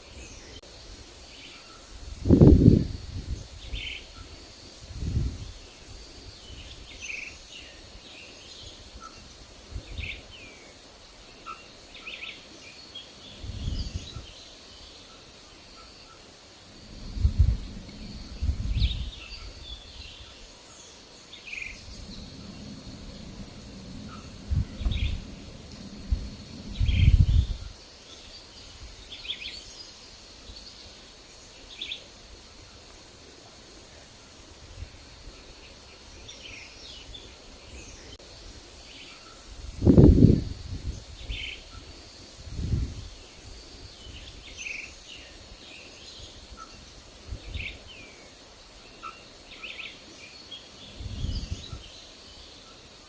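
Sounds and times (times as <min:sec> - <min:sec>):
wind gusting on microphone: 0:01.9 - 0:08.0, 0:08.6 - 0:10.4, 0:13.2 - 0:14.4, 0:16.7 - 0:20.5, 0:21.7 - 0:27.8, 0:39.5 - 0:44.6, 0:46.2 - 0:48.0, 0:50.8 - 0:52.0
birds chirping: 0:05.4 - 0:32.9.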